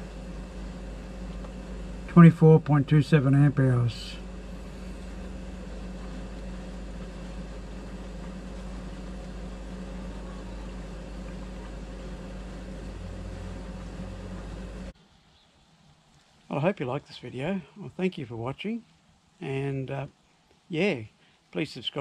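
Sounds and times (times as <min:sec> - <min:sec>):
fridge compressor humming: 0:00.0 - 0:15.0.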